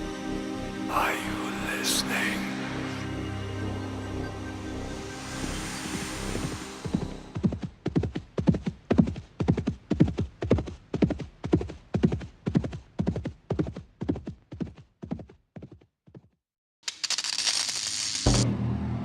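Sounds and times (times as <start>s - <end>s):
clopping steps: 7.4s - 16.4s.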